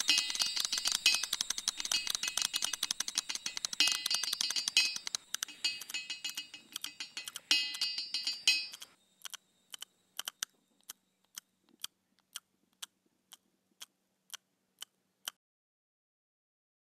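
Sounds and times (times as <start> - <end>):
glassy chime ringing: 0.0 - 8.9
clock ticking: 0.0 - 15.4.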